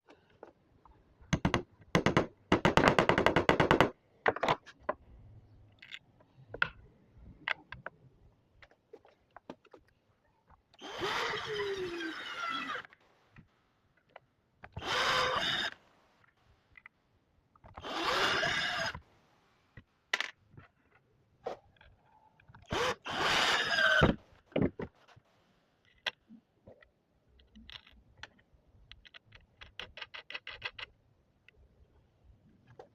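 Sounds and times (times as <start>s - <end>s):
power drill driving screws: 10.8s - 12.9s, 14.8s - 15.8s, 17.8s - 19.0s, 22.7s - 24.2s.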